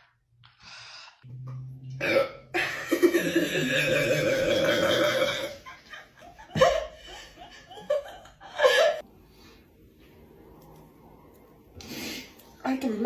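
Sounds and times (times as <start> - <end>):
person burping: 2.0 - 5.6.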